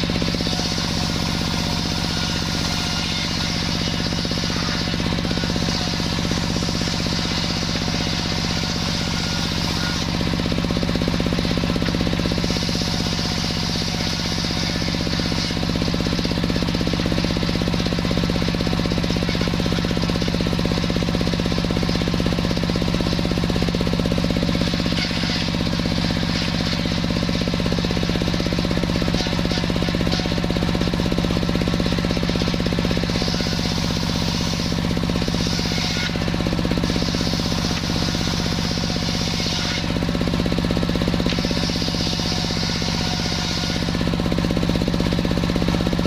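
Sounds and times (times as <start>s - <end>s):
saw hissing through log: 0.0s - 46.0s
sawmill machine drone pulsing: 0.0s - 46.0s.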